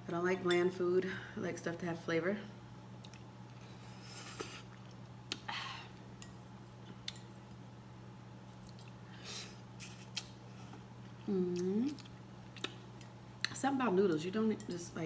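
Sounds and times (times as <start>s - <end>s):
steady low hum: 0.0s - 15.0s
chewing and wet mouth sounds: 3.0s - 5.5s, 8.5s - 9.1s, 9.8s - 13.6s.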